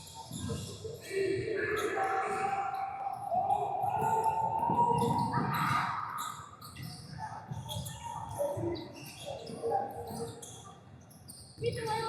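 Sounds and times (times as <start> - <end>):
scattered voices: 0.2 - 10.4.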